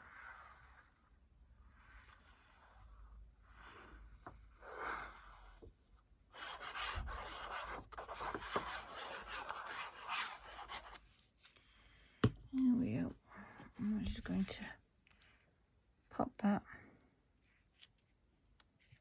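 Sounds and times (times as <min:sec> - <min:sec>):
paper and card rubbing: 0:06.4 - 0:11.6.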